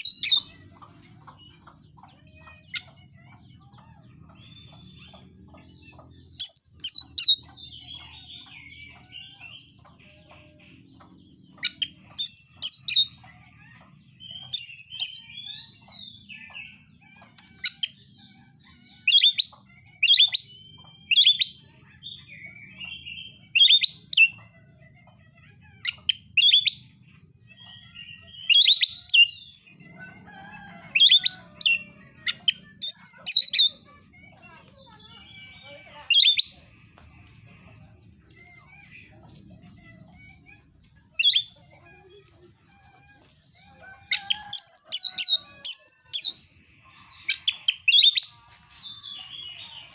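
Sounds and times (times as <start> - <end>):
bird whistling and warbling: 0.0 - 0.5, 6.3 - 9.0, 11.5 - 13.2, 14.2 - 18.0, 18.9 - 22.1, 22.8 - 24.3, 25.8 - 26.9, 27.8 - 29.6, 30.9 - 33.8, 35.2 - 36.6, 41.1 - 41.6, 44.1 - 46.4, 47.0 - 49.9.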